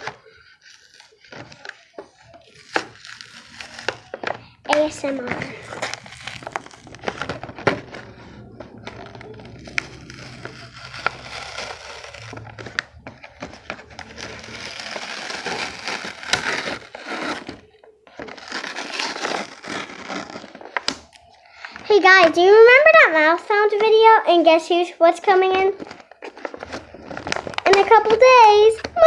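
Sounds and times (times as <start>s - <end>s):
plastic packaging crinkling: 0.0s - 22.8s, 25.2s - 29.0s.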